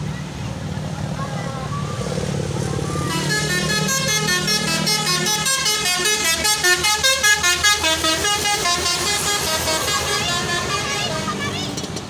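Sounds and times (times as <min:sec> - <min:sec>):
multi-tone bus horn tune: 0:02.9 - 0:12.0.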